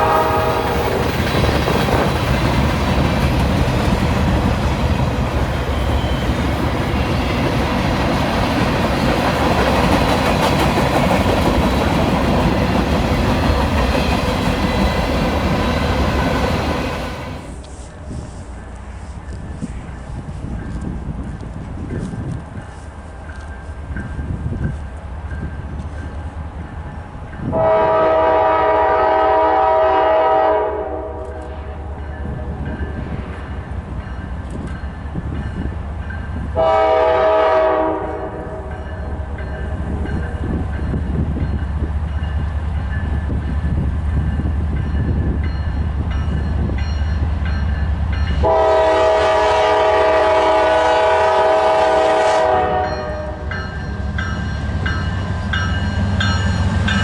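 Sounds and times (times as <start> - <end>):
locomotive air horn: 0.0 - 0.9, 27.5 - 31.4, 36.6 - 38.7, 48.4 - 53.5
passing train rumble: 0.0 - 57.0.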